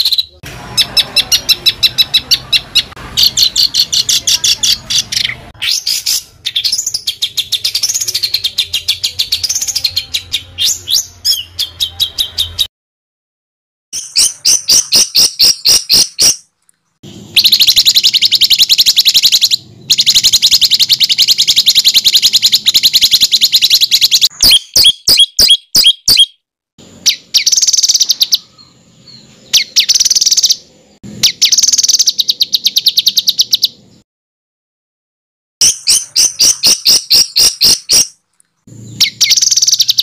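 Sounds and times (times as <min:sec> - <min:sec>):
songbird harsh rapid notes: 0:00.0 - 0:12.7, 0:14.0 - 0:28.8, 0:35.6 - 0:40.0.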